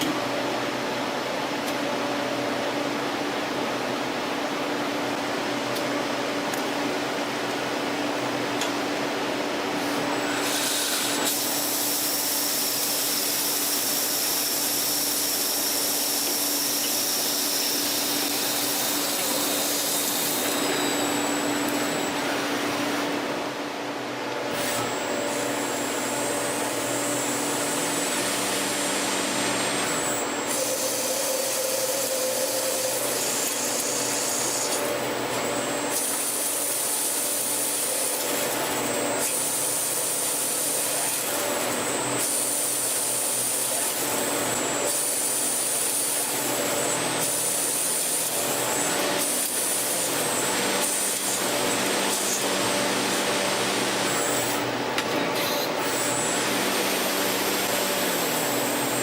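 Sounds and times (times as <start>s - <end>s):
lathe cutting metal: 10.2s - 22.9s, 24.5s - 59.0s.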